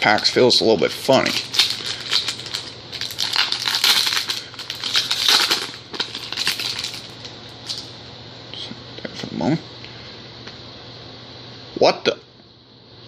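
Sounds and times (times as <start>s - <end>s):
wrapper being torn and crinkled: 0.1s - 7.9s.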